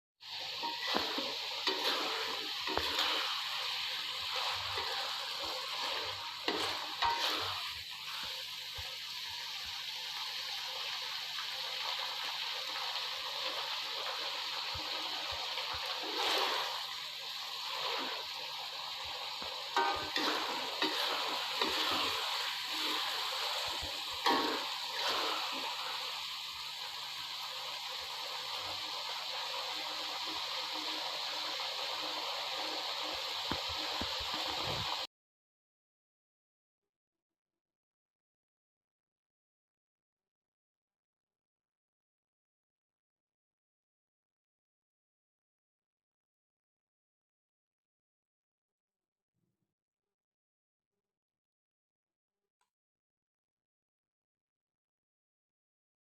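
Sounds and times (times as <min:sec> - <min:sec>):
steady cooking hiss: 0:00.2 - 0:35.1
utensils clattering on cookware: 0:19.8 - 0:22.7.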